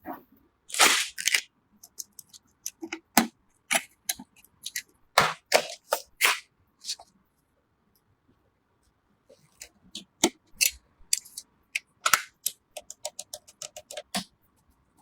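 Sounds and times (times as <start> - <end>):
plastic and metal clicks and snaps: 10.0 - 14.3.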